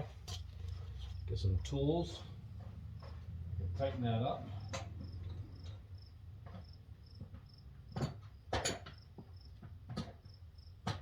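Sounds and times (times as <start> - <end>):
cricket chirping: 2.8 - 11.0.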